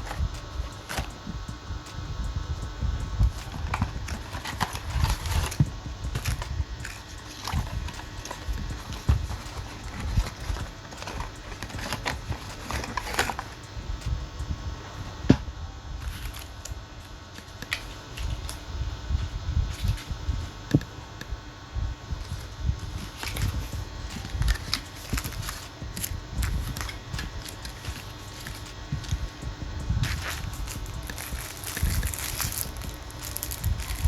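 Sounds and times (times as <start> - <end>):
packaging clicks and rustles: 0.0 - 2.0, 3.0 - 13.7, 22.2 - 34.0.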